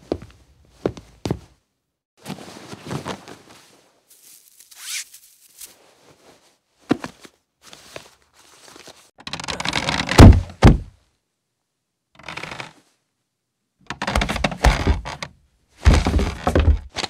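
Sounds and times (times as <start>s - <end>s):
heavy thumps: 10.1s - 10.9s, 15.8s - 17.0s.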